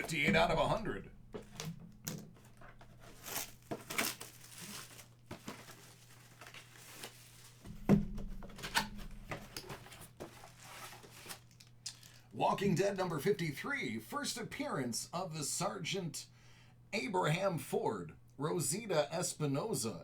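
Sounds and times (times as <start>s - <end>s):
packaging tearing and crinkling: 1.4s - 7.8s, 8.5s - 12.2s.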